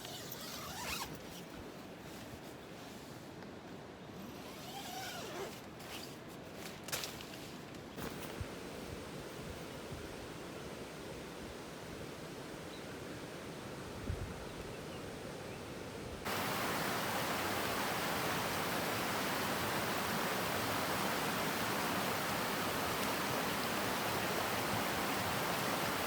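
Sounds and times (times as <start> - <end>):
rushing water: 15.0 - 26.0.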